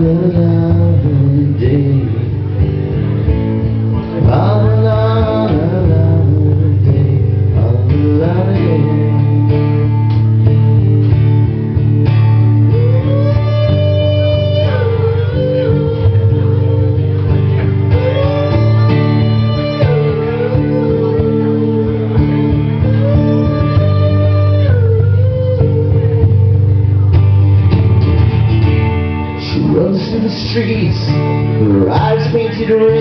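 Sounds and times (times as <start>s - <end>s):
guitar chord pattern: 0.0s - 33.0s
gliding melody line: 12.6s - 27.1s.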